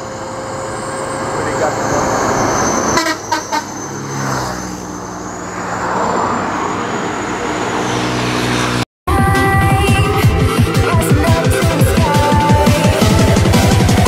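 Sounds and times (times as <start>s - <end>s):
bus engine drone and tyre noise: 0.0s - 14.0s
bus horn toots: 2.9s - 4.0s.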